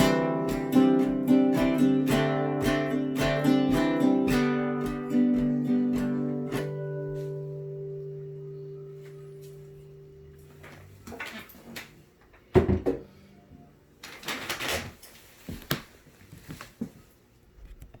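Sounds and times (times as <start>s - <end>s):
guitar chord ringing: 0.0s - 11.0s.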